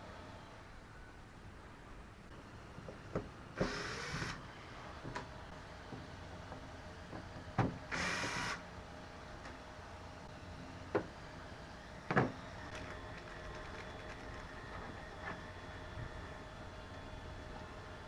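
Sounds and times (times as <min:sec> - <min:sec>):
small electric motor whirring: 0:03.6 - 0:04.4, 0:07.9 - 0:08.6.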